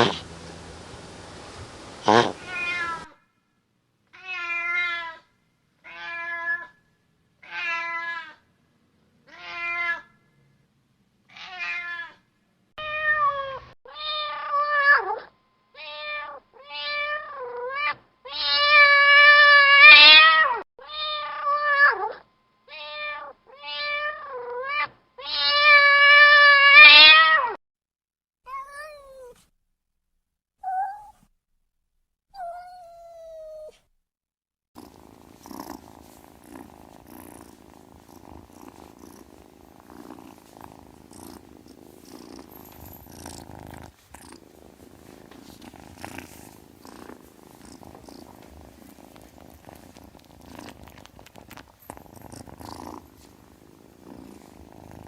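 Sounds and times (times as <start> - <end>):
cat meowing: 2.1 - 3.2, 4.2 - 5.2, 5.9 - 6.8, 28.5 - 29.4, 32.4 - 33.8
cat purring: 34.8 - 55.0.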